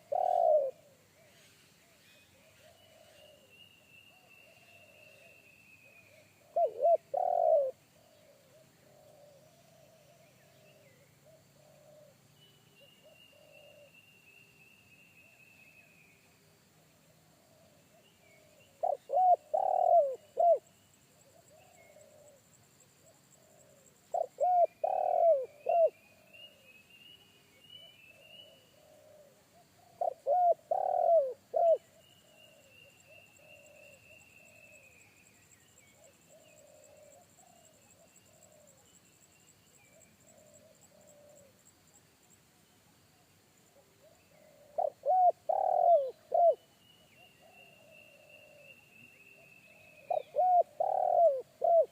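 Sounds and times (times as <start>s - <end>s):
dove cooing: 0.0s - 1.3s, 5.9s - 12.2s, 17.4s - 20.6s, 23.3s - 26.7s, 28.1s - 34.0s, 36.0s - 38.8s, 39.9s - 41.5s, 44.0s - 46.6s, 49.8s - 51.9s.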